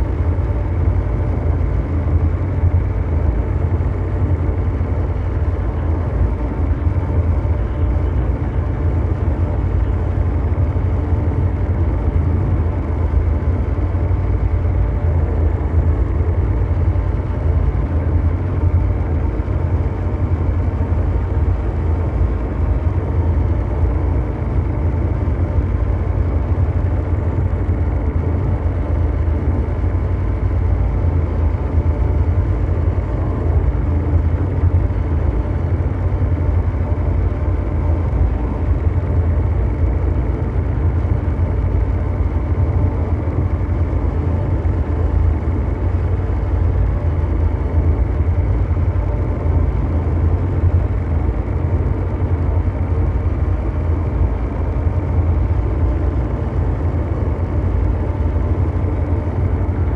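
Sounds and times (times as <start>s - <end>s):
engine-like mechanical drone: 0.0s - 59.9s
faint hum tones: 0.0s - 59.9s.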